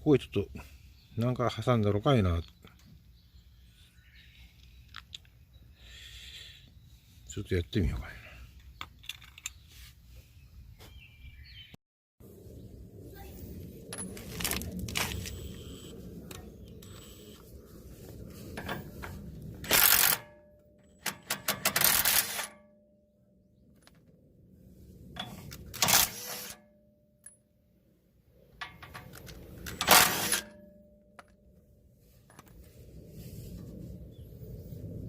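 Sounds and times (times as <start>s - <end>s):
metal tools clinking and rattling: 8.6s - 9.6s, 28.6s - 31.4s.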